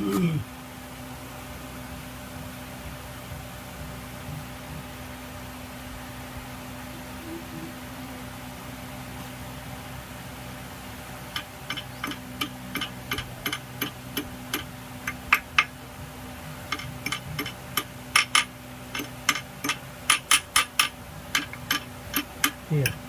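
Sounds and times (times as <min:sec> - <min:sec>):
faint low hum: 0:05.9 - 0:23.0.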